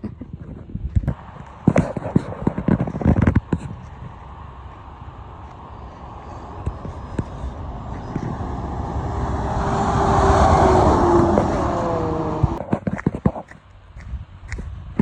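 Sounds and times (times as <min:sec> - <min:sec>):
vehicle passing by: 0:03.9 - 0:12.6.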